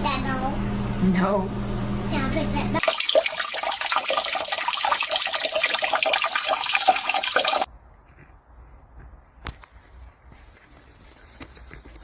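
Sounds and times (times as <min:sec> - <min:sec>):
water running and splashing: 0:02.8 - 0:07.7.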